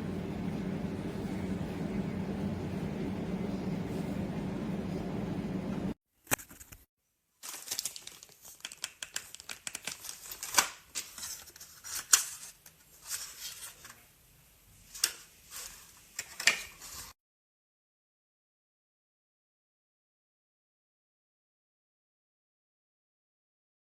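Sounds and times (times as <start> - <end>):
handling clicks and crinkling: 7.4 - 14.0.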